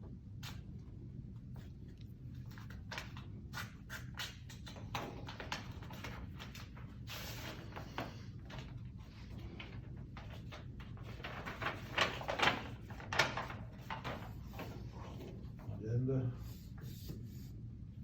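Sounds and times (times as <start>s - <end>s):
low room hum: 0.0s - 18.0s
paper sheets rustling: 2.4s - 15.8s.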